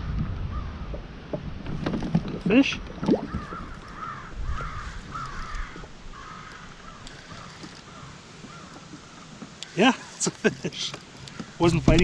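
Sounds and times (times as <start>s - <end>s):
bird calling: 3.2s - 12.0s.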